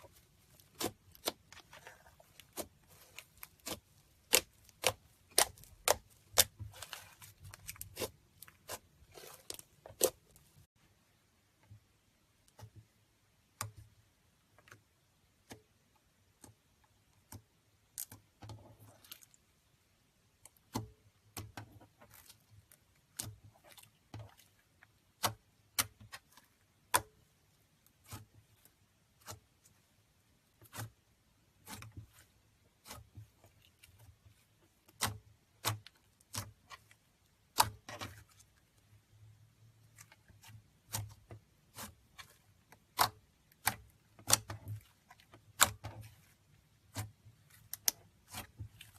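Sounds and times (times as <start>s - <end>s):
slime clicking and tapping: 0.6s - 10.2s, 23.0s - 27.3s, 34.8s - 38.5s, 39.9s - 46.2s.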